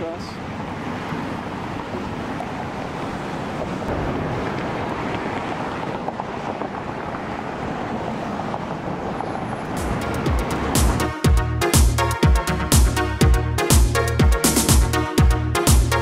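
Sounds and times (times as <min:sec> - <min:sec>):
traffic rumble: 0:00.0 - 0:16.0
wind on microphone: 0:00.4 - 0:11.0
electronic dance music: 0:09.8 - 0:16.0.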